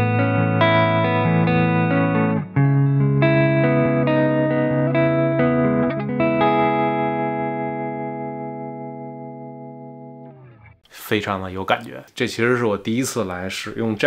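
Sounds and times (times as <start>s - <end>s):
electric guitar arpeggiated chords: 0.0s - 10.8s.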